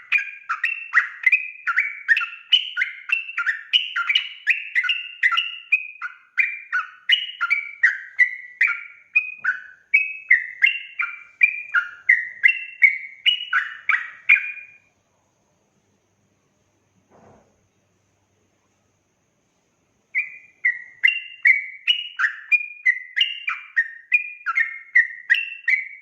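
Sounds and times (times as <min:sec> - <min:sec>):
bird warbling song: 0:00.0 - 0:14.9, 0:20.1 - 0:26.0.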